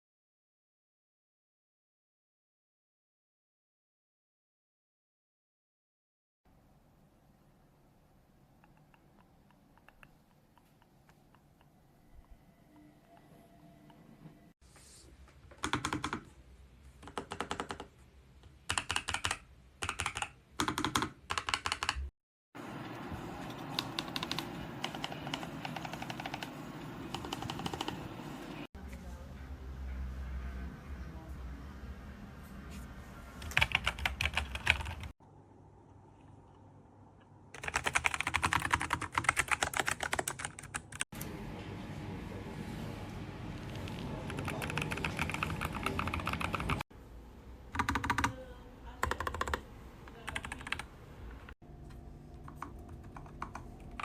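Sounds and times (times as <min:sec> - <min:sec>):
mechanical keyboard typing: 0:15.5 - 0:16.3, 0:17.0 - 0:17.9, 0:18.6 - 0:22.1, 0:23.2 - 0:28.2, 0:33.4 - 0:35.1, 0:37.6 - 0:41.0, 0:43.7 - 0:46.8, 0:47.7 - 0:48.4, 0:49.0 - 0:50.9, 0:52.4 - 0:54.0.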